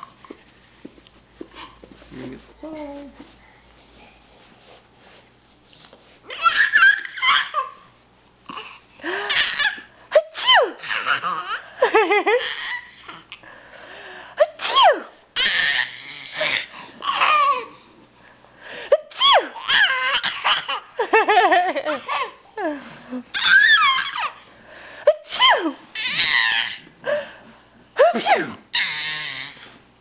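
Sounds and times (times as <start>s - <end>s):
adults sneezing loudly: 25.2s - 25.6s, 28.0s - 28.6s.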